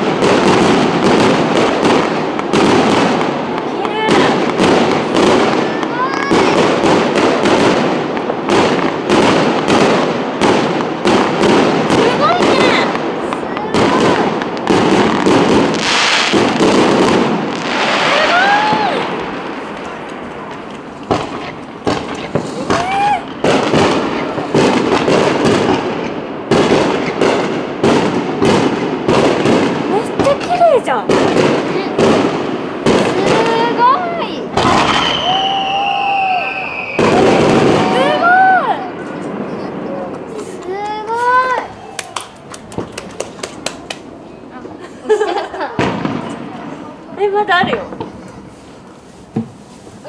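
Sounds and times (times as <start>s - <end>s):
firework shell bursts: 0.0s - 38.0s
dense firework crackling: 0.0s - 50.0s.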